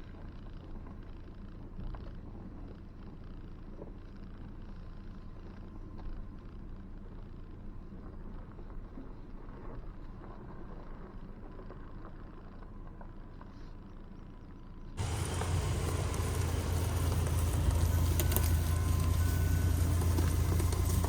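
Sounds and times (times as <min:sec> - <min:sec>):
faint ticks and knocks: 0:15.0 - 0:21.0
truck engine running low: 0:15.0 - 0:21.0.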